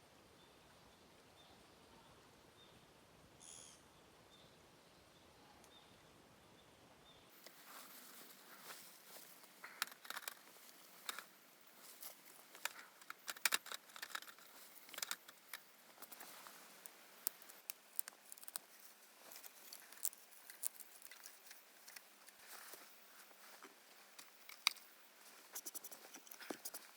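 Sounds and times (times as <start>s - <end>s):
crinkling: 7.3s - 26.9s.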